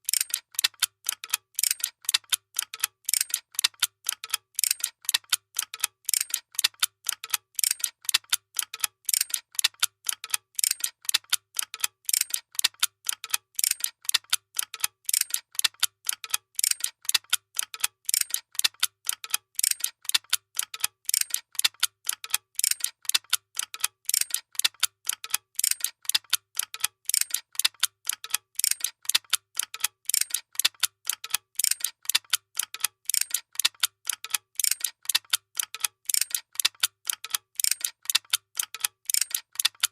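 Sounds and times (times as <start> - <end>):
machinery clicking rhythmically: 19.6 - 39.9.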